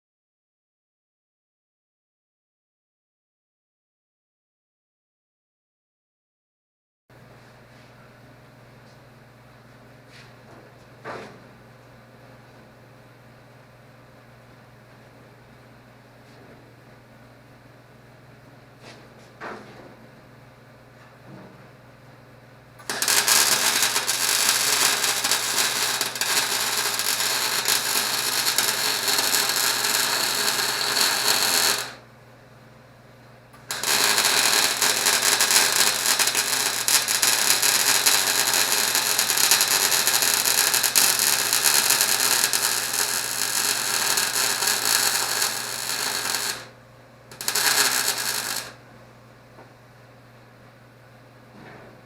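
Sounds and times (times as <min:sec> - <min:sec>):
welder arc crackling: 0:22.8 - 0:32.0, 0:33.6 - 0:48.8.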